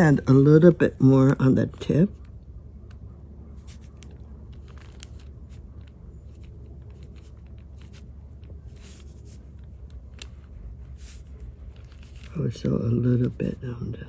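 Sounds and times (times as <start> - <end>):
steady low hum: 0.0 - 14.0
brush strokes on paper: 5.5 - 12.5.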